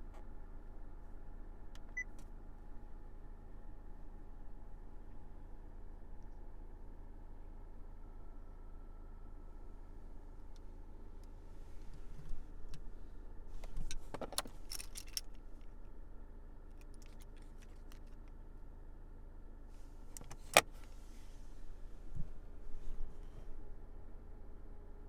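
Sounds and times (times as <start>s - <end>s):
keys jangling: 14.3s - 15.4s.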